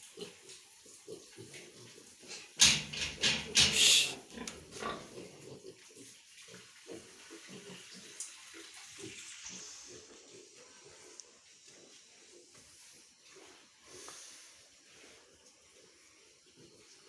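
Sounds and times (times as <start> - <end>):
pigs grunting: 0.2 - 8.0.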